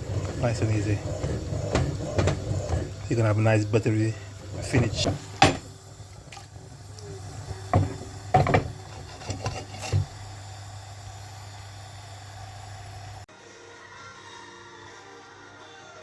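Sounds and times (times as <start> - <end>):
steady low hum: 0.0 - 13.3
utensil knocking against a pan: 4.2 - 6.5, 7.2 - 10.2.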